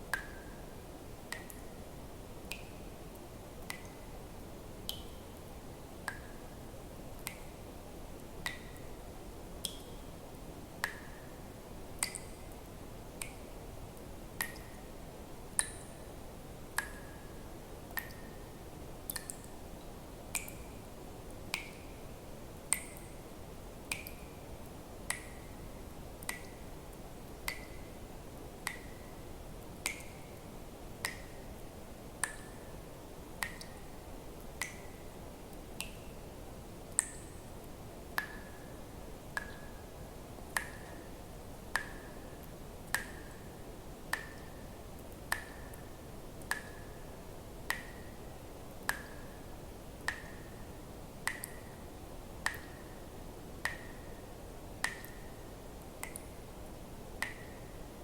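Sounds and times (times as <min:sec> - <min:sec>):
faint steady hiss: 0:00.0 - 0:58.0
water drops plinking into water: 0:00.1 - 0:00.6, 0:01.3 - 0:01.8, 0:02.4 - 0:04.1, 0:06.0 - 0:06.6, 0:08.4 - 0:08.9, 0:09.6 - 0:10.0, 0:12.0 - 0:13.6, 0:14.4 - 0:14.9, 0:15.5 - 0:16.1, 0:16.8 - 0:17.3, 0:17.9 - 0:18.4, 0:19.0 - 0:19.6, 0:20.3 - 0:20.8, 0:21.5 - 0:21.9, 0:22.7 - 0:23.2, 0:23.8 - 0:24.3, 0:25.0 - 0:25.6, 0:26.2 - 0:26.7, 0:27.4 - 0:27.9, 0:28.6 - 0:29.1, 0:29.8 - 0:30.4, 0:31.0 - 0:31.6, 0:32.2 - 0:32.6, 0:33.4 - 0:33.9, 0:34.6 - 0:36.2, 0:36.9 - 0:37.4, 0:38.2 - 0:38.6, 0:39.4 - 0:39.7, 0:40.5 - 0:41.0, 0:41.7 - 0:43.4, 0:44.1 - 0:45.8, 0:46.4 - 0:46.9, 0:48.8 - 0:49.2, 0:50.0 - 0:50.5, 0:51.2 - 0:51.7, 0:52.4 - 0:52.9, 0:53.6 - 0:54.1, 0:54.8 - 0:55.3, 0:56.0 - 0:56.4, 0:57.2 - 0:57.6.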